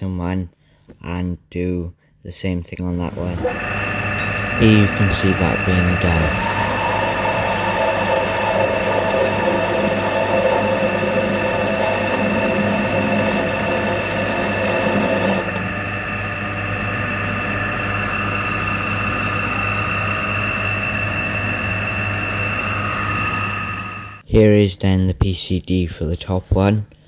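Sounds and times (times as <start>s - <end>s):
drill cutting metal: 3.0s - 24.2s
milling machine motor whine: 3.0s - 24.2s.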